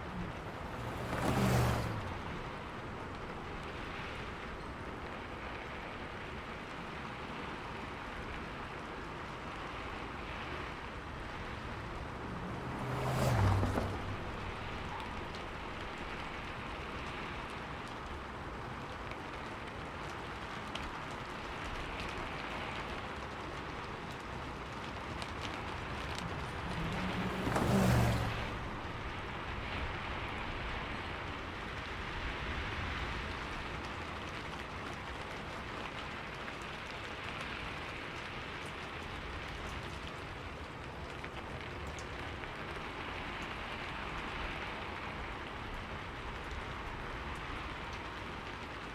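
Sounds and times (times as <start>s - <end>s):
vehicle passing: 0.0s - 4.4s, 11.0s - 17.4s, 25.3s - 33.6s
rain on a street: 0.0s - 48.9s.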